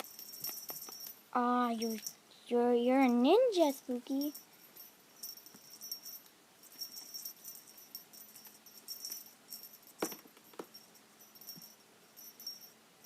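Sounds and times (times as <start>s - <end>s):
light metallic jingling: 0.0s - 2.3s, 3.0s - 12.8s.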